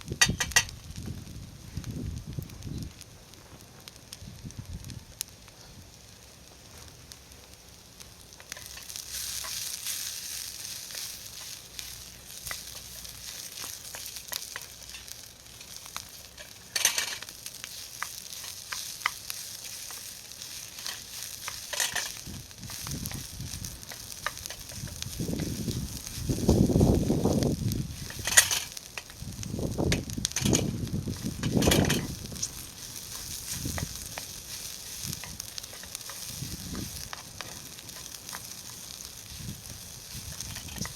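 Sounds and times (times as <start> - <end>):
food sizzling in a skillet: 0.0 - 40.9
stirring noises: 8.3 - 40.9
utensil clicking against pan: 8.4 - 26.1, 29.9 - 40.9.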